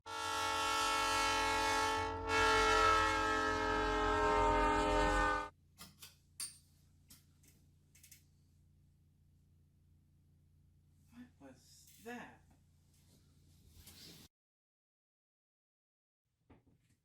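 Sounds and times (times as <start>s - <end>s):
loud horn blasts: 0.0s - 5.6s.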